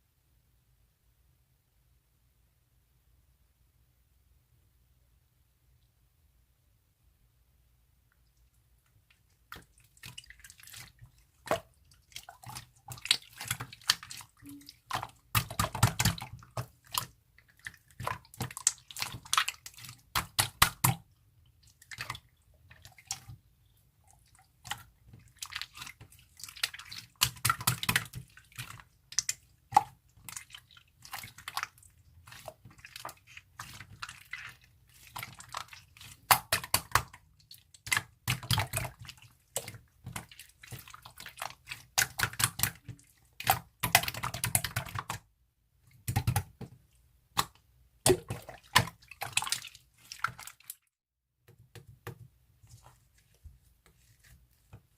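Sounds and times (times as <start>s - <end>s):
slime squelching and popping: 8.9s - 45.3s, 45.9s - 50.8s.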